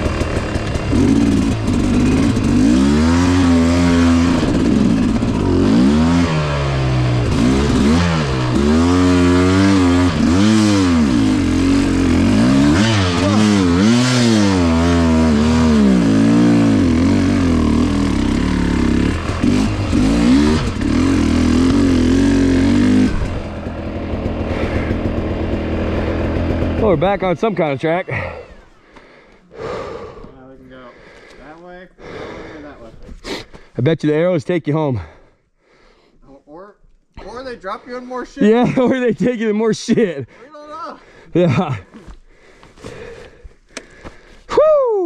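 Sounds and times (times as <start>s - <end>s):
two-stroke dirt bike engine revving: 0.0s - 28.7s.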